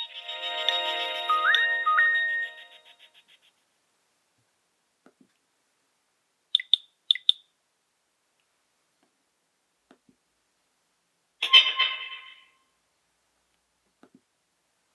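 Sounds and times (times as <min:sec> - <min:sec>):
mobile phone high beeps: 0:00.0 - 0:03.1.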